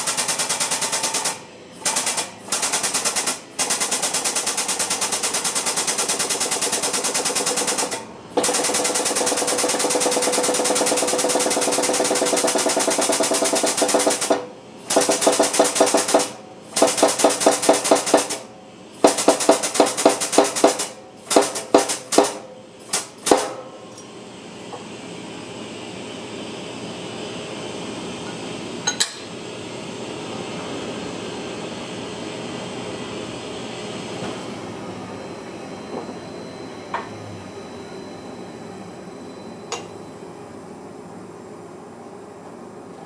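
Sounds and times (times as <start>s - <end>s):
impact wrench hammering: 1.9s - 23.6s.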